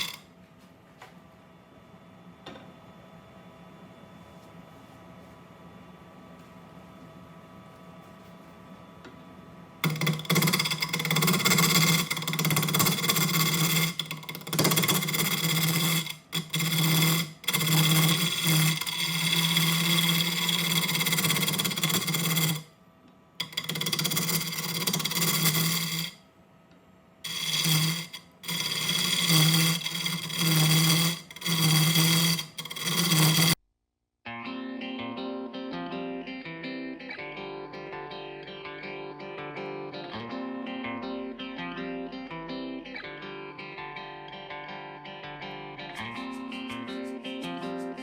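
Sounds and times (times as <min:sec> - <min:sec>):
gouge cutting spinning wood: 0:00.0 - 0:00.2, 0:09.8 - 0:22.7, 0:23.4 - 0:26.2, 0:27.3 - 0:33.6
lathe low hum: 0:00.0 - 0:33.6.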